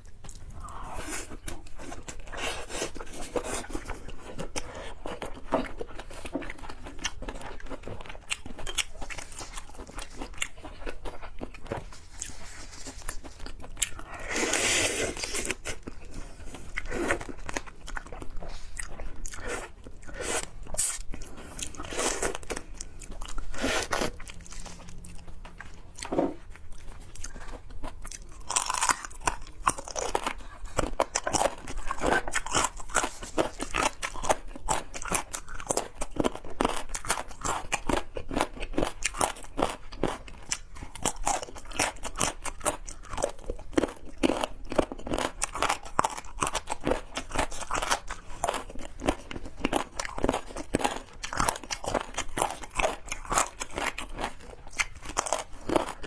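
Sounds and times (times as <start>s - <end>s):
crunchy bites and chewing: 0.0s - 56.0s.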